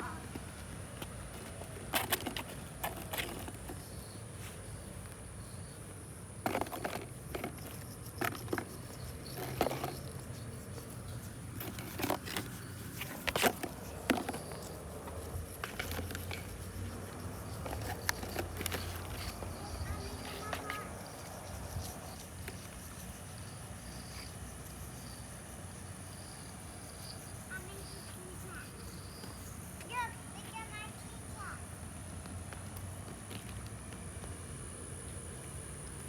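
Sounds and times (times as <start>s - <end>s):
rustling: 0.0s - 22.6s.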